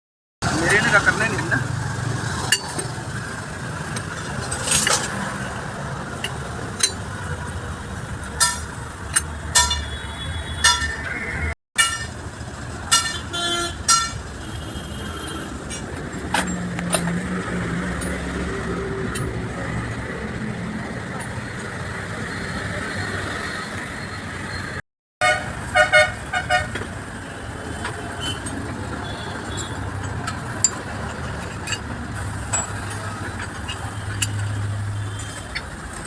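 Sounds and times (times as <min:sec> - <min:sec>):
traffic rumble: 0:00.4 - 0:36.0
metal tools clinking: 0:08.4 - 0:10.0, 0:13.9 - 0:14.2, 0:28.2 - 0:35.6
car horn toots: 0:12.9 - 0:15.5, 0:25.2 - 0:26.8.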